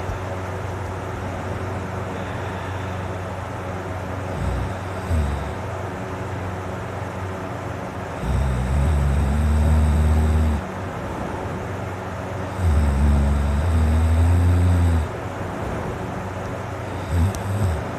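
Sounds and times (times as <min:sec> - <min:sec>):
man snoring deeply: 0:04.2 - 0:05.8, 0:08.1 - 0:10.7, 0:12.4 - 0:15.2, 0:16.8 - 0:17.9.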